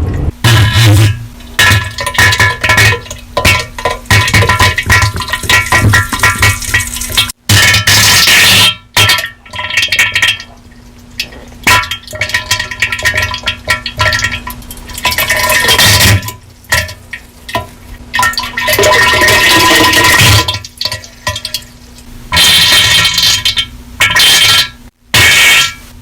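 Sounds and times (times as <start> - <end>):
distorted diarrhea sound effect: 0.0 - 1.3
faint steady hum: 0.0 - 26.0.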